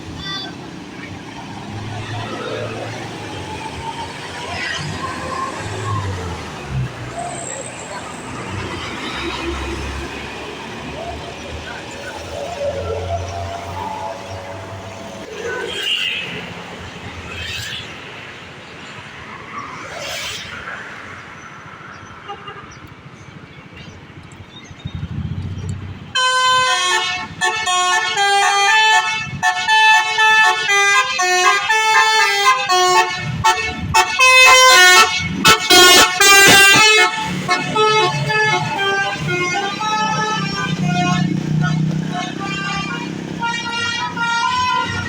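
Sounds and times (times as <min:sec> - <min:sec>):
traffic and engine rumble: 0:00.0 - 0:45.0
bus musical horn tune: 0:26.2 - 0:45.0.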